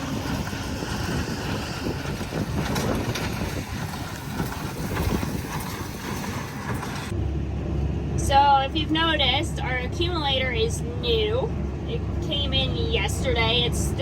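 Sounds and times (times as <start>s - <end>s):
wind on microphone: 0.0s - 7.2s
low engine hum: 0.0s - 14.0s
tractor and baler running: 0.0s - 14.0s.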